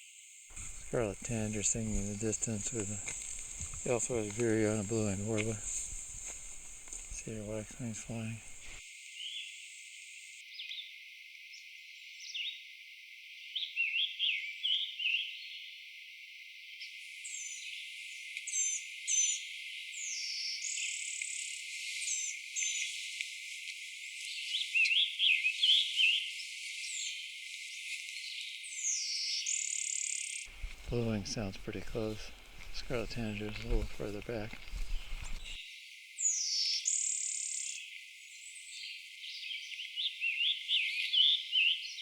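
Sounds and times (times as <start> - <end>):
high thin bird calls: 0.5 - 8.8, 30.5 - 35.6
warbler buzzy song: 0.5 - 9.4, 28.2 - 35.6, 36.2 - 37.8
tanager burry song phrases: 0.8 - 3.1, 3.8 - 5.7.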